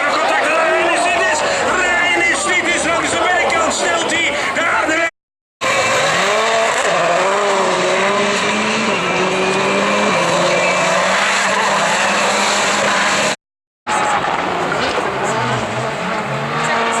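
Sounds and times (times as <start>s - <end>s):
racing car engines revving: 5.6s - 17.0s.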